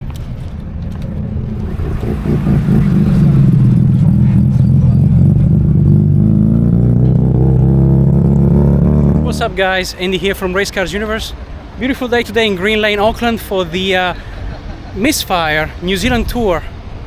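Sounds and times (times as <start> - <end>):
car engine running: 1.2 - 9.6.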